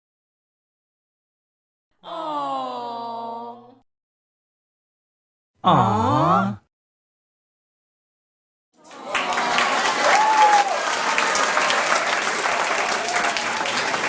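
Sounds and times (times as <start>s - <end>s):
crowd applauding: 8.8s - 14.0s.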